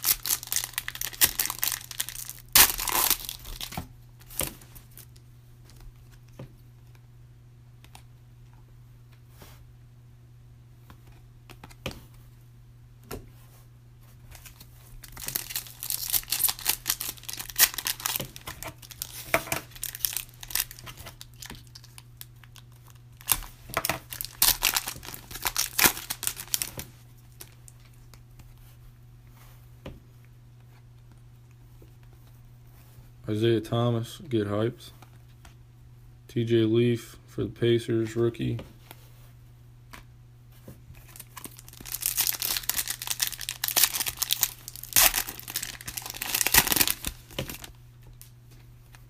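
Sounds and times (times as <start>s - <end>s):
trading cards handled: 0.0s - 5.1s, 14.3s - 22.0s
low electrical hum: 0.0s - 49.0s.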